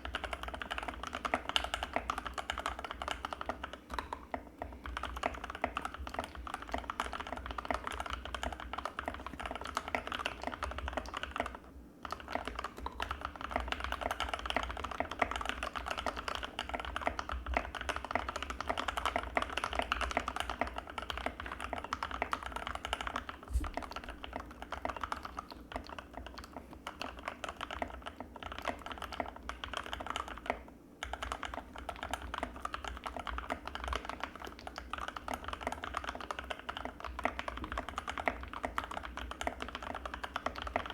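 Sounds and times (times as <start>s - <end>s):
fast keyboard typing: 0.0s - 3.8s, 4.8s - 40.9s.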